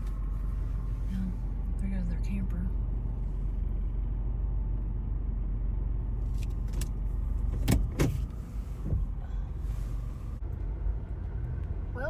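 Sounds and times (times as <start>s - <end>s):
car rumble inside cabin: 0.0s - 12.0s.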